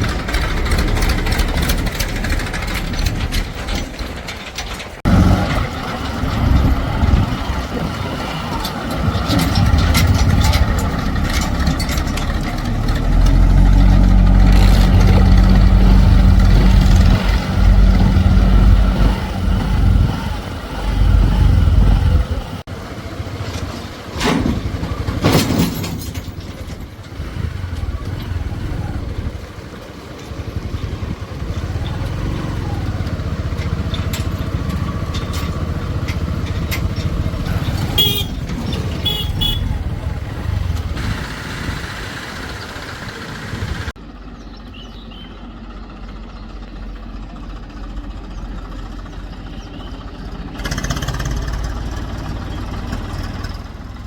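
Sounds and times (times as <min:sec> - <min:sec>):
diesel engines working: 0:00.0 - 0:54.0
short noisy engine bursts: 0:37.3 - 0:44.0.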